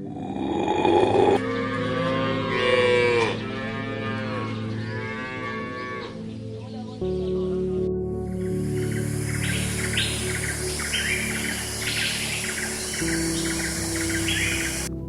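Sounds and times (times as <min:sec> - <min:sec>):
background music: 0:00.0 - 0:15.0
cow mooing: 0:00.5 - 0:06.2.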